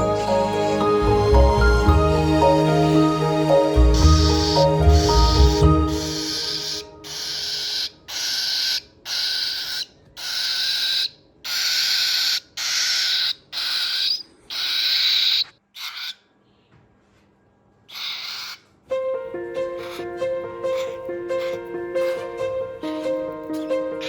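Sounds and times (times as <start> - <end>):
cockatiel chick begging calls: 3.9 - 16.2, 17.9 - 18.6, 19.8 - 20.1, 20.7 - 22.3.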